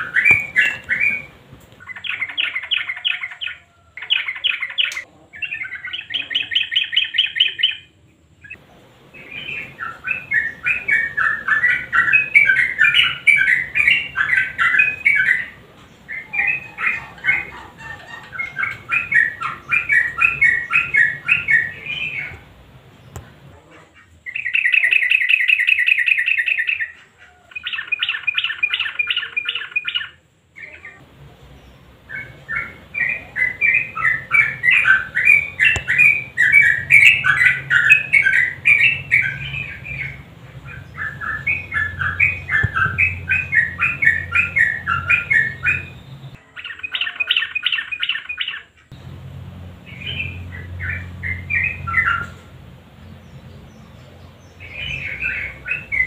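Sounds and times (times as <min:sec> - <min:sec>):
bird chattering song: 0:00.0 - 0:56.0
low hum: 0:48.9 - 0:56.0.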